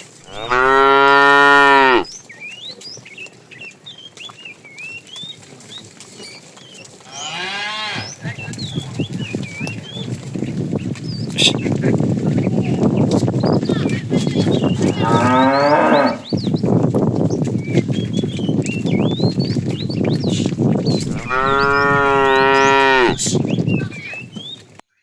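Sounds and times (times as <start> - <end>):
cattle mooing: 0.2 - 2.1, 14.8 - 16.3, 21.0 - 23.4.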